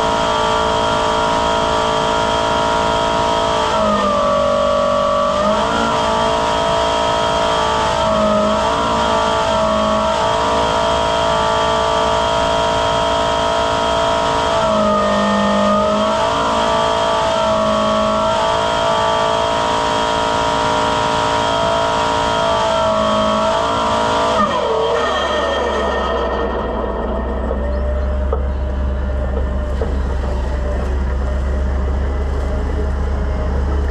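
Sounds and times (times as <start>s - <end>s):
turbine blower whine: 0.0s - 33.9s.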